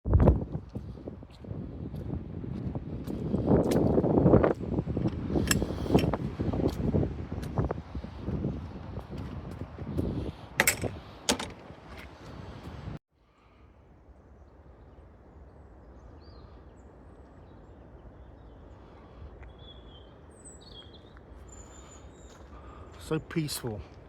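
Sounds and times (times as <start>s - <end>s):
wind rumbling on microphone: 0.0s - 13.0s
bird chirps: 19.4s - 22.6s.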